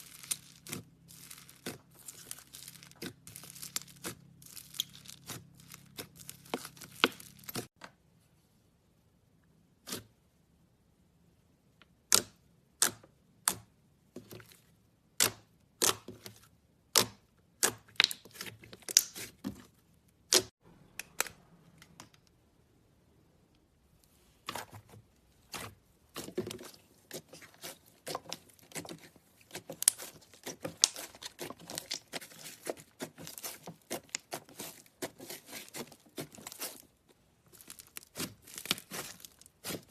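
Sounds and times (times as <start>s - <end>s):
slime popping and crackling: 0.0s - 7.7s, 26.3s - 36.8s, 37.5s - 39.9s.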